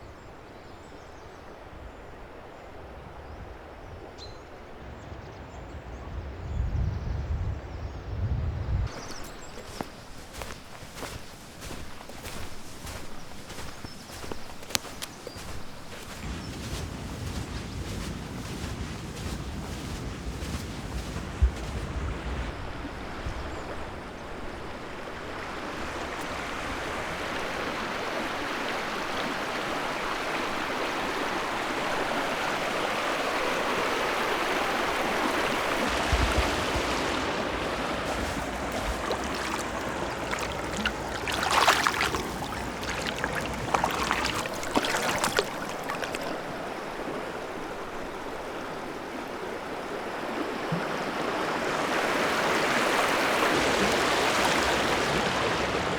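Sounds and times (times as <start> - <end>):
water splashing: 8.9 - 22.5, 32.7 - 48.8, 50.6 - 55.9
stream flowing: 8.9 - 55.9.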